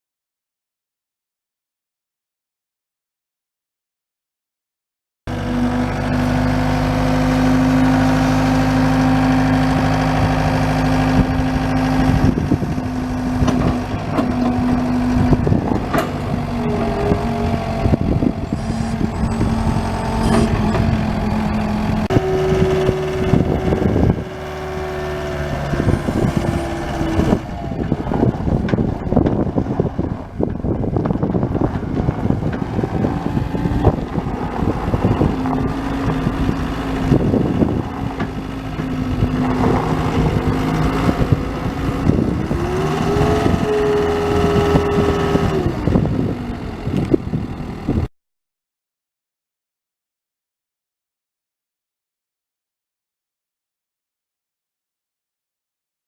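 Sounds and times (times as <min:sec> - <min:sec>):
diesel engine running: 0:05.3 - 0:48.1.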